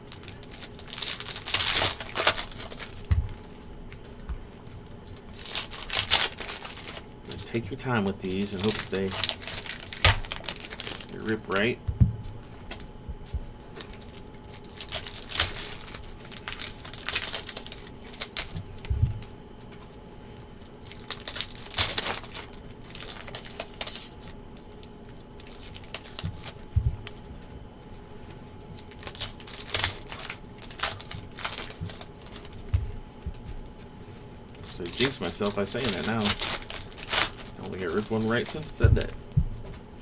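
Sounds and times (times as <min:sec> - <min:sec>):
wrappers crinkling and tearing: 0:00.0 - 0:13.0, 0:13.6 - 0:40.0
cards shuffling: 0:00.1 - 0:19.9, 0:28.8 - 0:40.0
soft thumps: 0:11.8 - 0:13.6, 0:18.9 - 0:19.3, 0:26.7 - 0:27.2, 0:32.7 - 0:33.7, 0:38.7 - 0:39.9.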